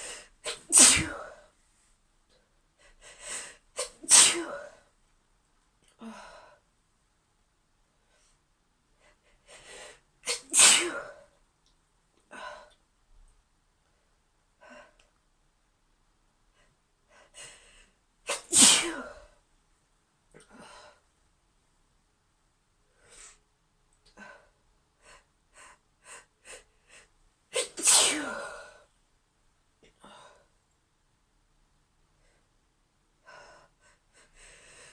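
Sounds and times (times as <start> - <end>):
woman sneezing: 0.5 - 1.4, 3.8 - 4.8, 10.3 - 11.1, 18.3 - 19.3, 27.6 - 28.7.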